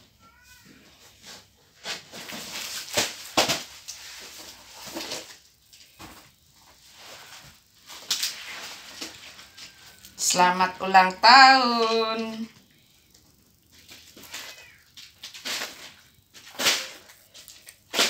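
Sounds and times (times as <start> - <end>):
wrapping paper rustling: 1.8 - 5.9, 6.8 - 10.2, 13.6 - 18.0.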